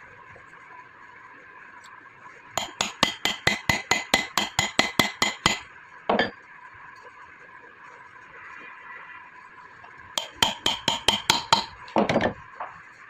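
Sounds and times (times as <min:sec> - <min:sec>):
steady high hum: 0:00.0 - 0:13.0
hammer striking metal: 0:02.6 - 0:06.3, 0:10.2 - 0:12.4.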